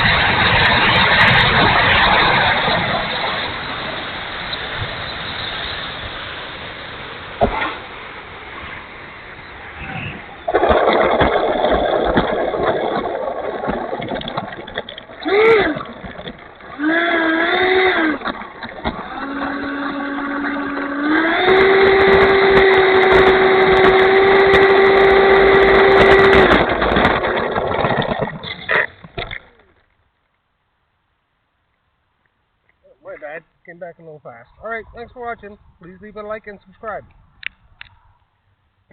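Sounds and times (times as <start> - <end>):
wind buffeting microphone: 0.0 - 5.3, 7.4 - 28.4, 34.5 - 38.2
electric ducted fan whining: 0.0 - 28.2.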